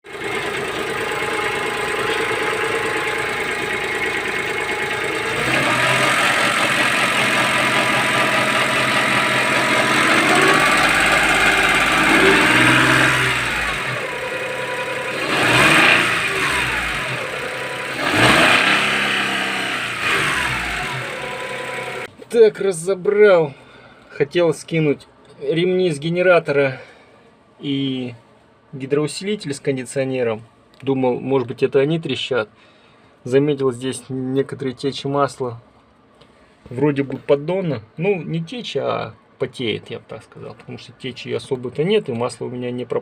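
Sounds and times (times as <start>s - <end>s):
car engine idling and revving: 0.1s - 22.1s.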